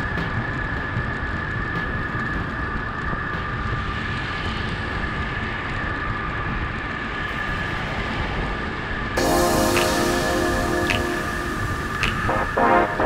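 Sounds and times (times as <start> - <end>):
steady high tones: 9.2 - 13.0.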